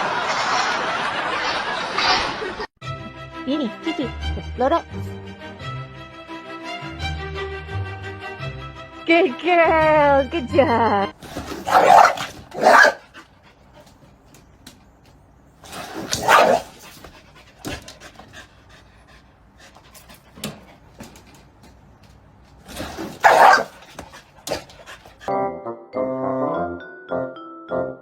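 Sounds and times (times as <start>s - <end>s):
dog panting: 11.2s - 25.3s.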